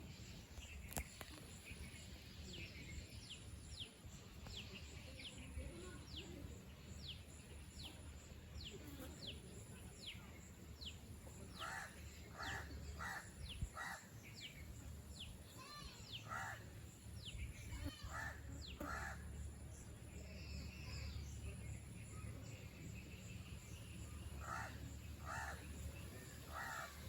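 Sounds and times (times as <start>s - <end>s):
low rumble of wind: 9.7s - 15.8s
harsh bird calls: 11.6s - 14.6s, 15.2s - 19.5s, 24.4s - 27.0s.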